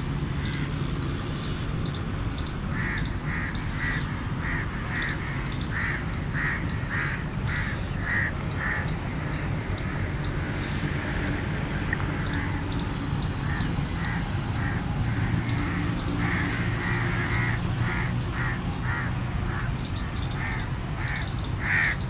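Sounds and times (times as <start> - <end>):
crow cawing: 2.7 - 9.0, 13.4 - 22.0.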